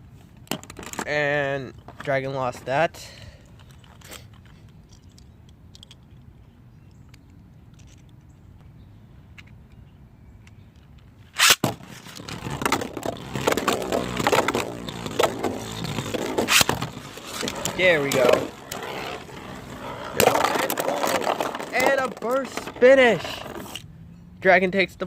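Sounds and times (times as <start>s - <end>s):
launcher snap: 11.4s - 11.8s.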